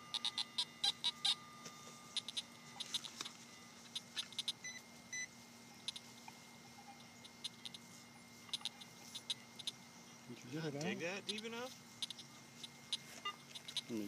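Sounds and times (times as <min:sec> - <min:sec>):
short electronic beeps: 0:00.0 - 0:06.0
metal detector steady tone: 0:00.0 - 0:14.0.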